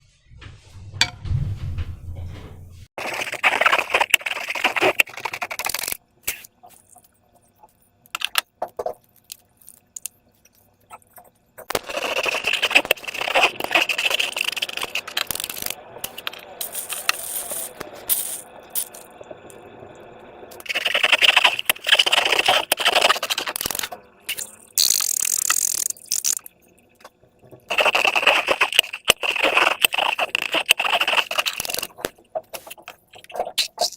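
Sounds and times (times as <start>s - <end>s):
slime crackling and scraping: 3.0s - 6.9s, 11.0s - 19.0s, 20.6s - 23.9s, 27.7s - 33.9s.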